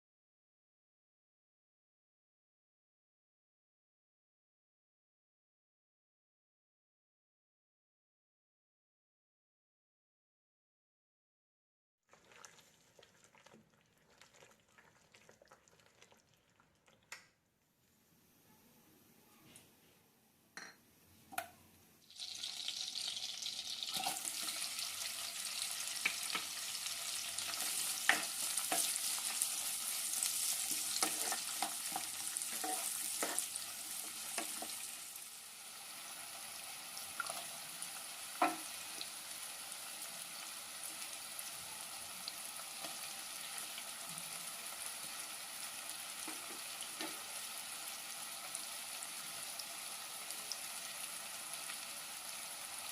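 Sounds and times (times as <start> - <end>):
food sizzling in hot pan: 22.0 - 52.9
spatula stirring and scraping pan: 23.9 - 35.0, 45.0 - 47.6.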